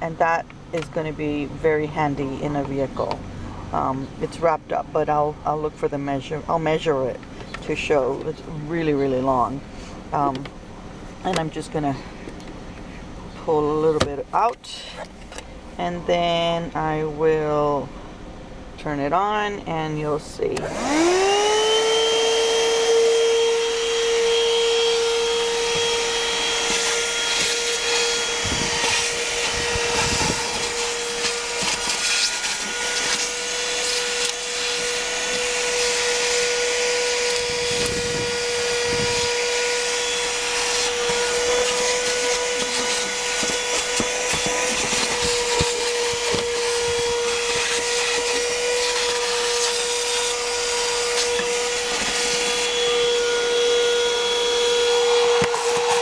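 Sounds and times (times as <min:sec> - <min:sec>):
handheld vacuum whine: 0:20.6 - 0:56.0.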